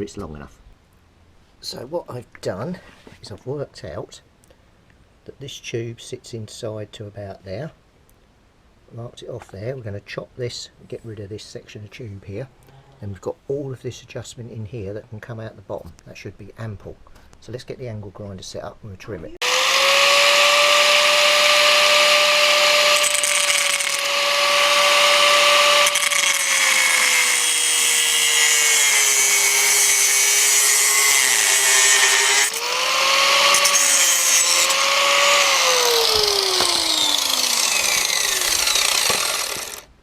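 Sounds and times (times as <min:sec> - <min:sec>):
angle grinder cutting metal tube: 0:19.4 - 0:39.9.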